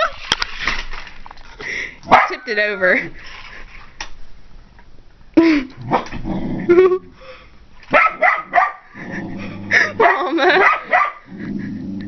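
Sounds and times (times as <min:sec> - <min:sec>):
dog barking: 0:02.1 - 0:02.4, 0:07.9 - 0:08.9, 0:10.0 - 0:11.3.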